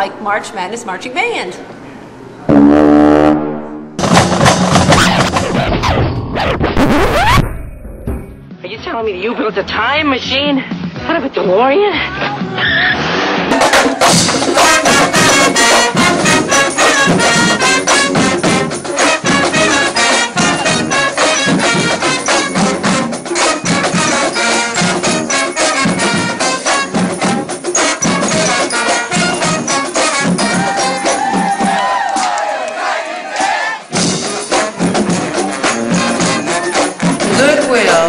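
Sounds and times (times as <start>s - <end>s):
brass band playing: 2.5s - 6.0s, 13.0s - 32.2s, 32.8s - 38.0s.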